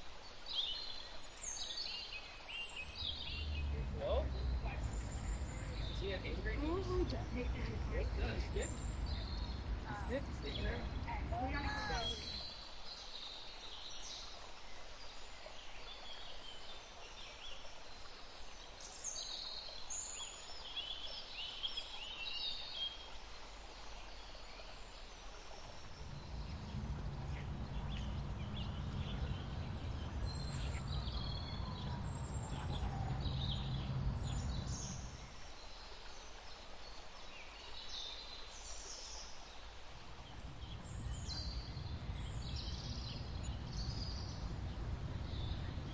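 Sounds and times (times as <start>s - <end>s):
birds chirping: 0.6s - 13.3s, 25.8s - 36.8s, 37.6s - 45.9s
low rumble: 26.0s - 35.4s.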